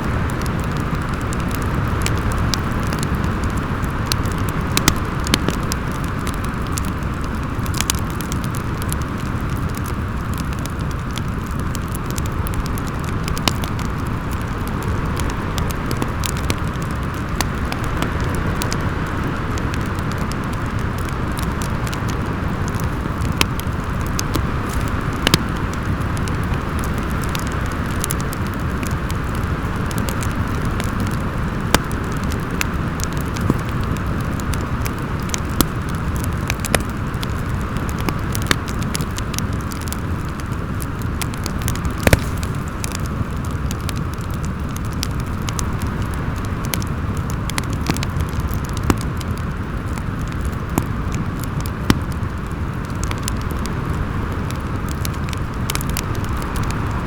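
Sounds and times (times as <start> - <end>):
wind with low rumble: 0.0 - 57.0
wood fire crackling and popping: 0.0 - 57.0.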